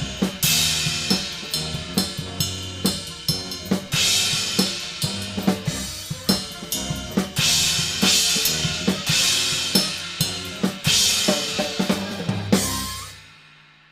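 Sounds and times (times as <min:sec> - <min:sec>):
big band chords: 0:00.0 - 0:13.5
drum kit playing swing: 0:00.0 - 0:13.9
crash cymbal: 0:07.4 - 0:13.9.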